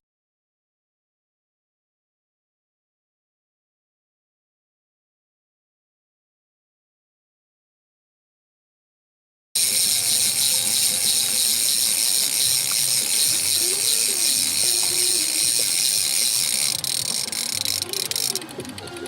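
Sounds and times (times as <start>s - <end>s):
fishing reel ratchet buzzing: 9.6s - 19.0s.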